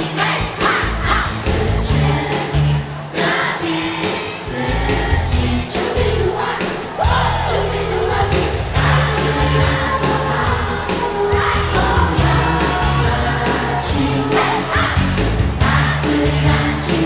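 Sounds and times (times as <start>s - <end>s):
voices singing: 0.0s - 17.0s
heavy bass beat: 7.0s - 17.0s.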